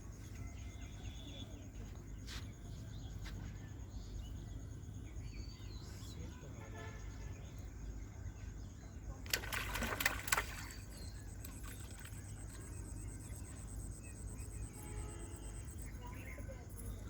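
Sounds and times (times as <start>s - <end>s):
river water splashing: 9.2s - 12.7s.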